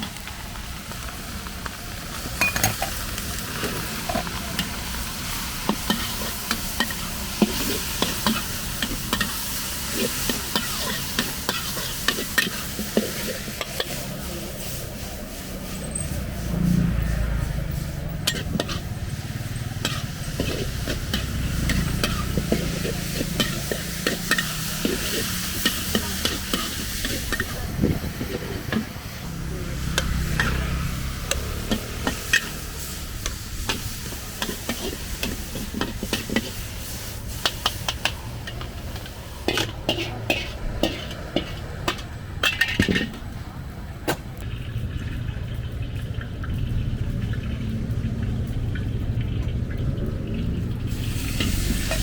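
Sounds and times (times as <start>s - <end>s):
food sizzling in a wok: 0.0s - 43.1s, 50.1s - 52.0s
metal spatula scraping a wok: 2.4s - 28.9s, 29.8s - 43.2s.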